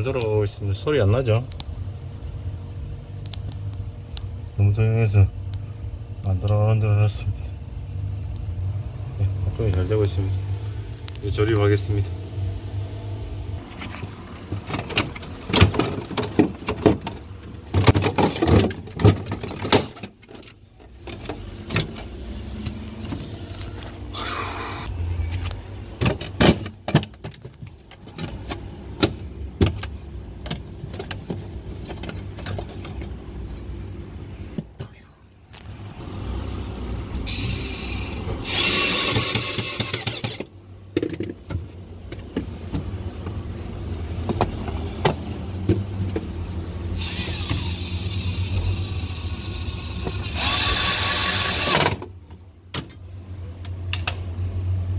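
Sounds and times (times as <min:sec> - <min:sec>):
steady low hum: 0:00.0 - 0:54.9
plastic parts clicking and knocking: 0:13.8 - 0:22.1, 0:39.0 - 0:43.4.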